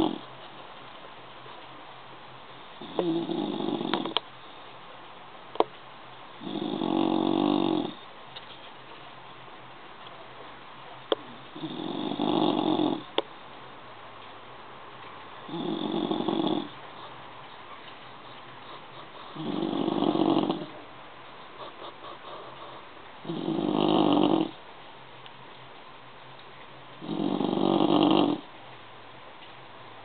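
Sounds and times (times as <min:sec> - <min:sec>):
dog snoring: 0:00.0 - 0:00.3, 0:02.8 - 0:04.2, 0:06.4 - 0:08.0, 0:11.5 - 0:13.2, 0:15.5 - 0:17.1, 0:18.6 - 0:20.8, 0:21.6 - 0:24.6, 0:27.0 - 0:28.5.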